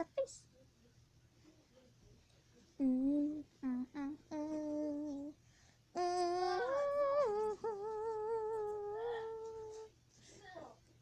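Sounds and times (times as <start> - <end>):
girl humming: 2.8 - 5.4, 6.0 - 9.9.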